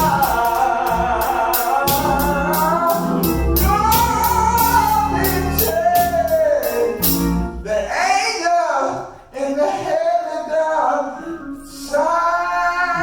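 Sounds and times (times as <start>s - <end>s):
person singing gospel: 0.0s - 13.0s
band with bass and drums: 1.1s - 7.5s.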